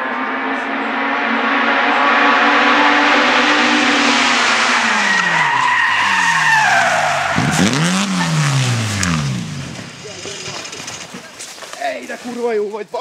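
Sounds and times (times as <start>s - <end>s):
car engine revving: 0.0s - 11.2s
tyre squeal: 4.6s - 11.2s.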